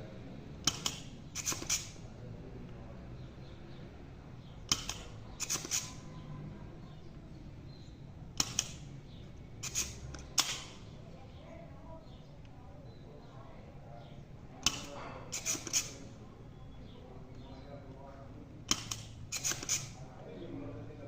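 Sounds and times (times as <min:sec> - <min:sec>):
sharp clicks and scrapes: 0:00.6 - 0:02.0, 0:04.7 - 0:06.0, 0:08.4 - 0:08.9, 0:09.6 - 0:10.8, 0:14.6 - 0:16.1, 0:18.7 - 0:20.0.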